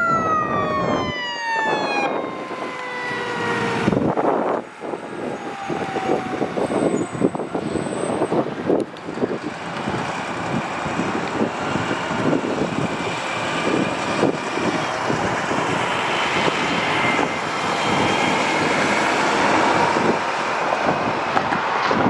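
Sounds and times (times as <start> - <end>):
vehicles driving by: 0.0 - 22.0
wind on microphone: 0.0 - 22.0.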